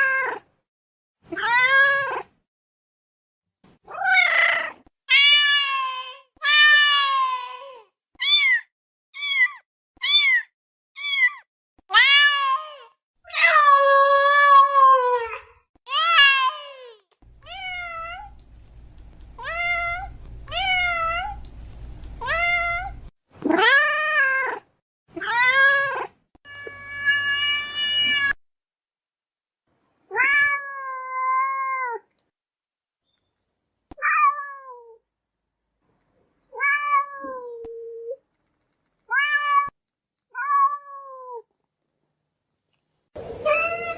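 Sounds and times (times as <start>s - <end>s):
cat meowing: 8.2s - 12.8s, 17.4s - 18.4s, 19.4s - 21.4s, 22.2s - 23.0s
faint low hum: 17.3s - 23.1s.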